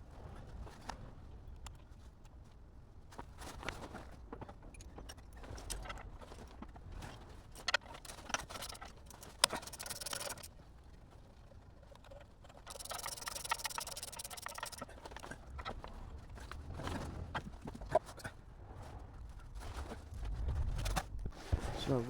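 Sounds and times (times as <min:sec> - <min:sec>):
hand tools clinking on metal: 0:07.6 - 0:10.5.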